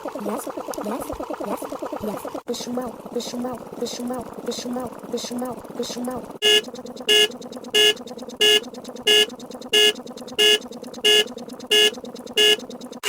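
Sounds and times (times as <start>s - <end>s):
buzzy alarm beeps: 6.4s - 12.7s.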